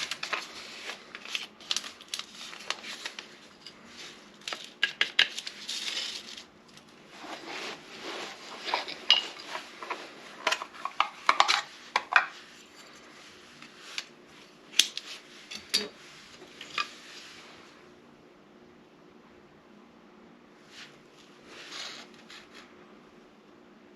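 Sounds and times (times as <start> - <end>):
wooden sticks clicking and tapping: 4.4 - 5.5.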